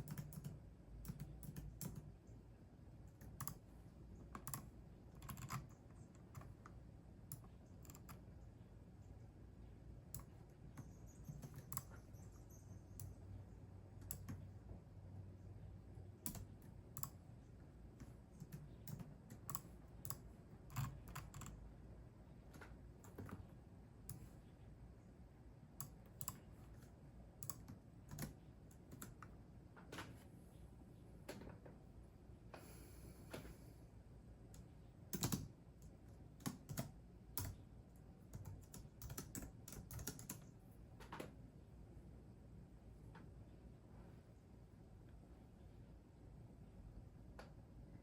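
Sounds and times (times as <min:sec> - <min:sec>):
keyboard typing: 0:00.0 - 0:02.3, 0:03.1 - 0:08.3, 0:10.1 - 0:13.2, 0:14.0 - 0:14.5, 0:16.2 - 0:17.3, 0:17.9 - 0:21.6, 0:22.5 - 0:24.3, 0:25.8 - 0:29.4, 0:34.6 - 0:37.6, 0:38.2 - 0:40.5.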